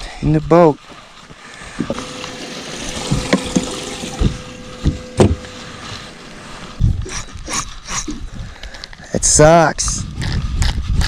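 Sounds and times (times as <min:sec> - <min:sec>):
water sloshing in a boat: 0:01.5 - 0:06.8
knocks on boat hull: 0:03.1 - 0:05.5.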